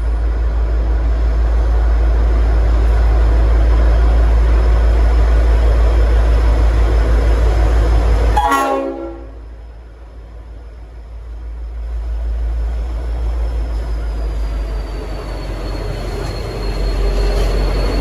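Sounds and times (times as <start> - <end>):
locomotive engine rumble: 0.0 - 18.0
locomotive air horn blast: 8.3 - 9.4.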